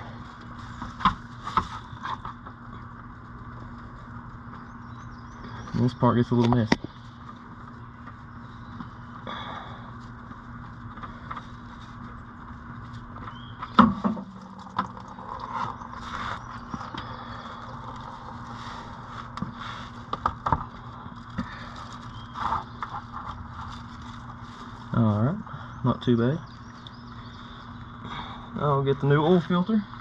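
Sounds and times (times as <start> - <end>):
steady low hum: 0.0 - 30.0
oil filter clicks and scrapes: 12.8 - 24.8.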